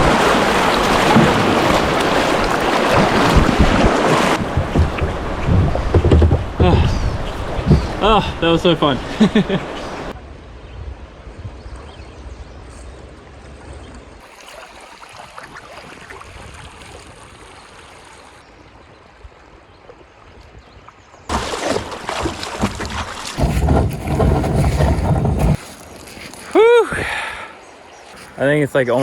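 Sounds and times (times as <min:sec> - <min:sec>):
paddle splashes: 0:00.0 - 0:10.2, 0:13.4 - 0:26.6
river water flowing: 0:00.0 - 0:10.4, 0:12.4 - 0:24.2
heavy low water rumble: 0:00.0 - 0:20.7, 0:21.3 - 0:26.0.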